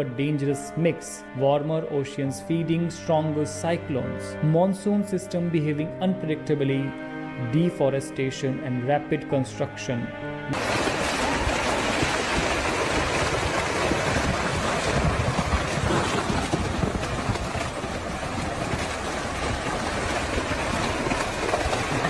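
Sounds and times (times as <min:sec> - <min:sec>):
moving water: 0:10.5 - 0:22.0
wind: 0:10.5 - 0:22.0
wind buffeting microphone: 0:10.6 - 0:22.0.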